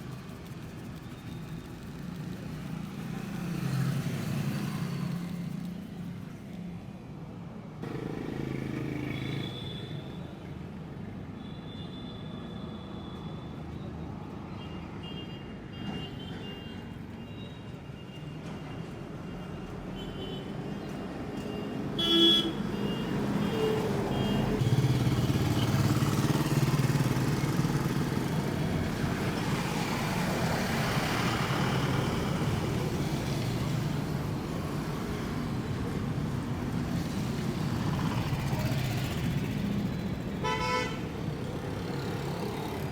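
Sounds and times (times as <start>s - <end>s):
vehicle engines passing: 0.0s - 6.6s, 23.1s - 42.9s
car horn toot: 22.0s - 22.6s, 40.4s - 41.0s.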